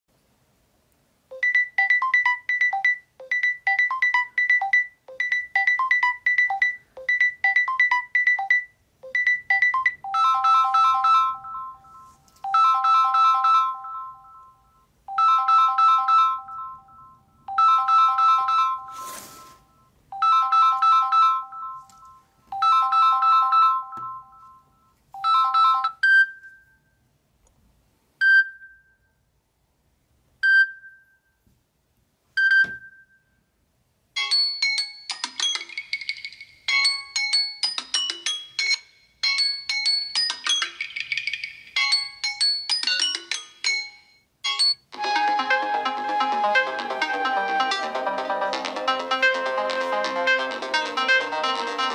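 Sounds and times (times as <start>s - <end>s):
high-pitched phone ringtone: 1.3s - 26.9s, 34.2s - 51.9s
chime-like ringtone chord: 9.6s - 26.0s.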